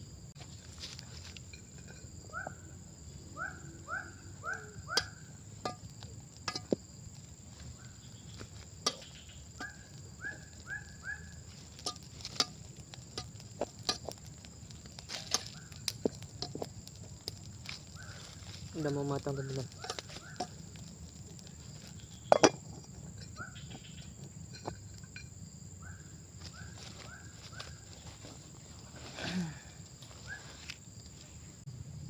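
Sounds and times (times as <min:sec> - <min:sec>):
high insect drone: 0:00.0 - 0:32.0
sharp clicks and cracks: 0:04.4 - 0:22.3.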